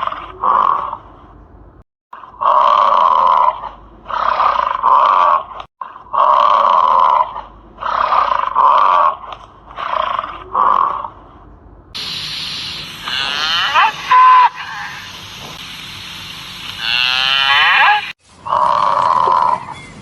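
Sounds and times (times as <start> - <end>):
animal calling loudly: 12.9 - 15.1, 16.8 - 19.9.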